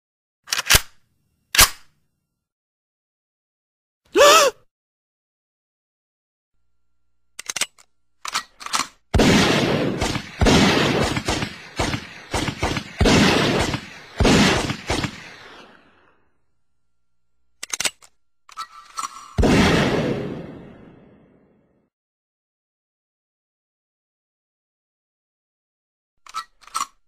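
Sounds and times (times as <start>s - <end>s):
sharp gun clicks: 0.5s - 1.9s, 7.4s - 9.0s, 17.6s - 19.4s
gunshots with echo: 9.2s - 16.0s, 19.4s - 21.4s.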